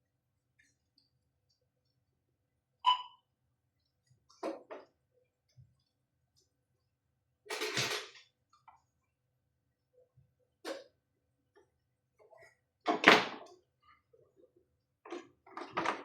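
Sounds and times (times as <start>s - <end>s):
tools clattering: 7.5s - 8.2s.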